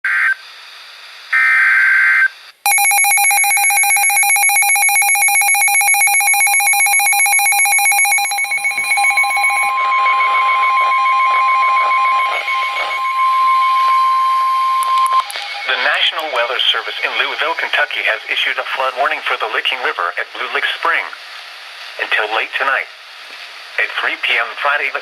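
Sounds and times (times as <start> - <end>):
rapidly pulsing electronic signal: 2.7 - 18.2
screeching data burst: 5.1 - 16.9
steady single tone: 7.8 - 16.1.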